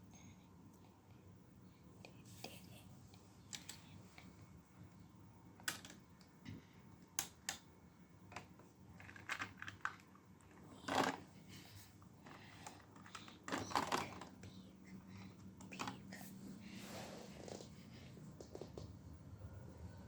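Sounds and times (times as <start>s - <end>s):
plastic pieces clicking and rattling: 5.6s - 6.0s, 8.3s - 11.3s, 12.2s - 14.5s.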